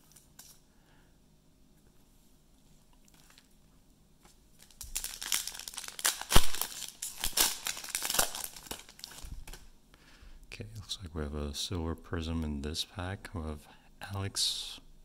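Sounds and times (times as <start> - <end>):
wrapper tearing and crinkling: 4.6 - 9.7.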